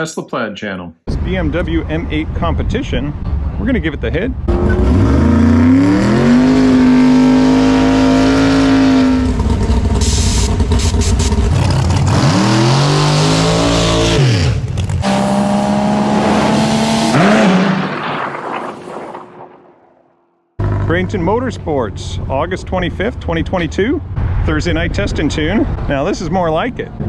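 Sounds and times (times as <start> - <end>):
drag racing car engines revving: 1.1 - 18.2.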